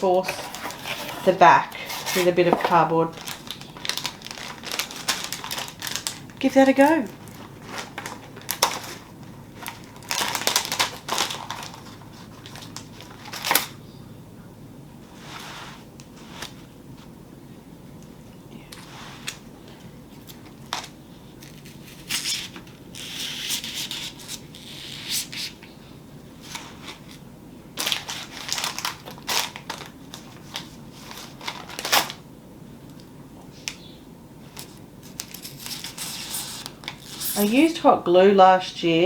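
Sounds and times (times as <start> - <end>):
styrofoam crunching and tearing: 0.2 - 9.0, 9.6 - 13.7, 27.8 - 32.2, 34.6 - 37.7.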